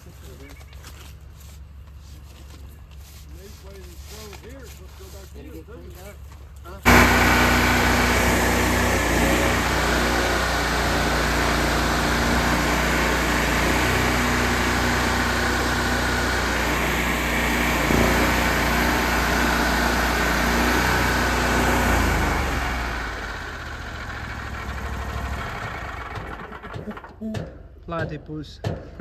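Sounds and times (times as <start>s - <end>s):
engine running: 6.7s - 27.4s.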